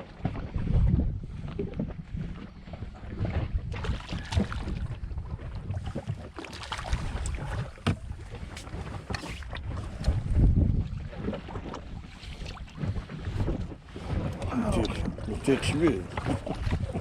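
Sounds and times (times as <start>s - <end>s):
sea: 0.0s - 17.0s
wind buffeting microphone: 0.0s - 17.0s.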